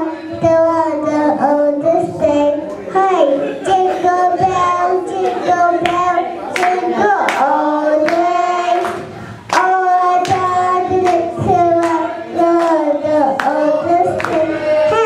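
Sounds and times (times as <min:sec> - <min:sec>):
children singing: 0:00.0 - 0:15.0
hand claps: 0:05.2 - 0:12.8, 0:13.4 - 0:14.5.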